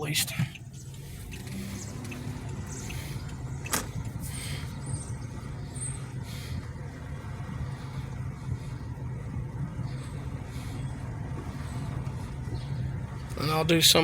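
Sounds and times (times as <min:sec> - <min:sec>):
car engine running: 0:00.0 - 0:14.0
road noise: 0:00.0 - 0:14.0.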